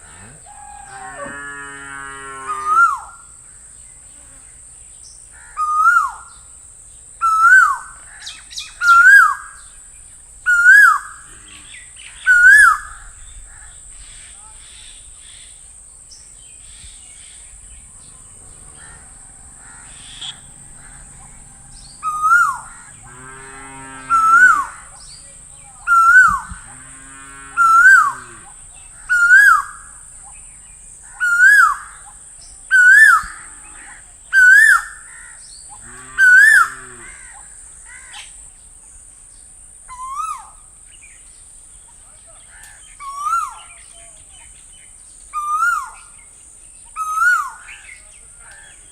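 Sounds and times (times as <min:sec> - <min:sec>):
lower-pitched call: 0:00.0 - 0:03.3, 0:17.7 - 0:29.9
bird calling ko-el: 0:05.4 - 0:06.4, 0:07.2 - 0:09.8, 0:10.5 - 0:15.6, 0:16.2 - 0:26.8, 0:27.6 - 0:33.8, 0:39.9 - 0:48.9.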